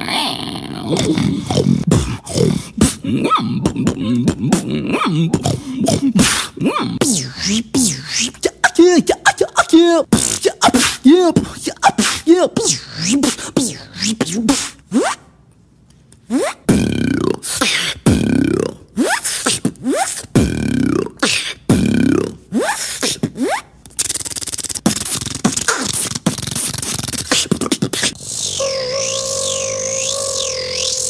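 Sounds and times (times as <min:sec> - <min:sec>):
person beatboxing: 0:00.6 - 0:15.2, 0:16.2 - 0:31.0.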